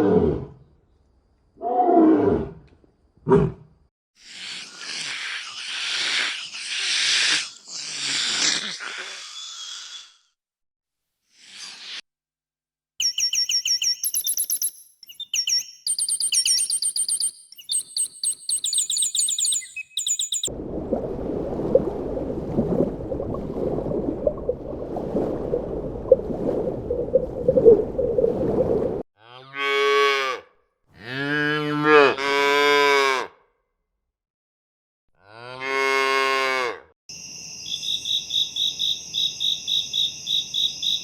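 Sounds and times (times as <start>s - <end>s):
high-pitched chirping calls: 13.0s - 20.5s
cow mooing: 29.2s - 33.4s, 35.2s - 36.9s.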